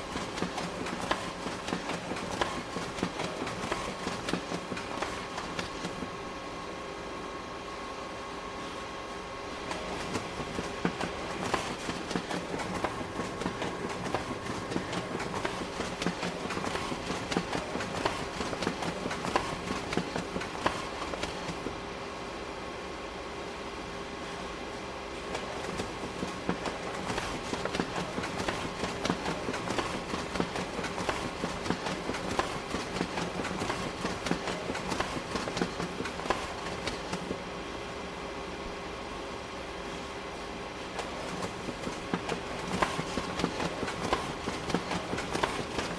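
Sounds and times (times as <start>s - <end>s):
photocopier clicks and clacks: 0.0s - 6.1s, 9.6s - 21.7s, 25.3s - 37.4s, 41.0s - 45.9s
photocopier motor humming: 0.0s - 6.2s, 9.5s - 21.7s, 25.4s - 37.4s, 41.0s - 45.9s.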